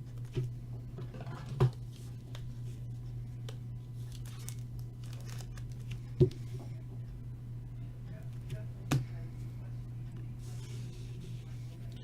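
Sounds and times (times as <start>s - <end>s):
steady low hum: 0.0s - 12.0s
trading cards rustling: 3.4s - 6.6s.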